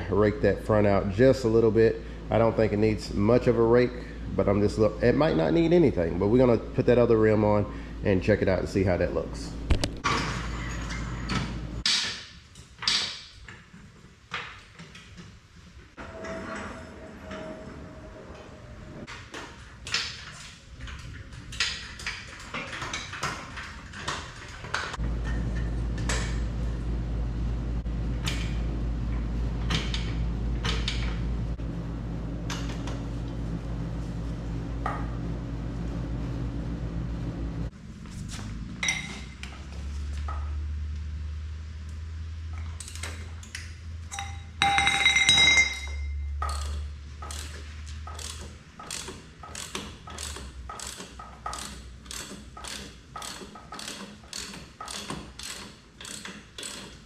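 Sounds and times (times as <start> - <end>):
metal tools clinking: 38.8 - 39.4, 42.8 - 48.4
metallic ringing clang: 44.1 - 46.4.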